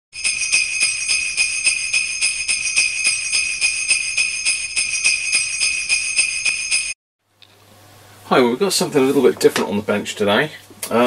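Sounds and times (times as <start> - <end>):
sleigh bells shaken: 0.2 - 7.0.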